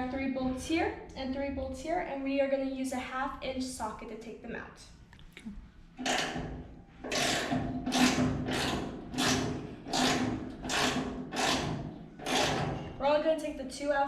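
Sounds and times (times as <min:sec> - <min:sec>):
ratchet wrench strokes: 0:07.1 - 0:12.8.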